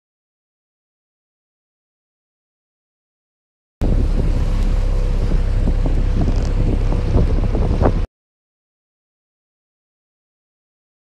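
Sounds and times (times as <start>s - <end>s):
outboard engine humming: 3.8s - 8.1s
wind buffeting microphone: 3.8s - 8.1s.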